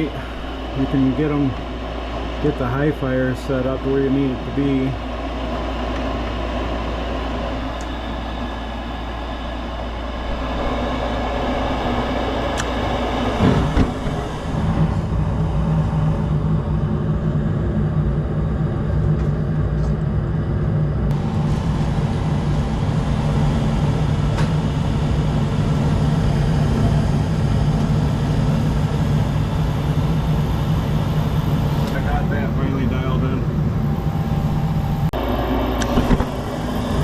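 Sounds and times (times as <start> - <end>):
gas furnace humming: 0.0 - 37.0.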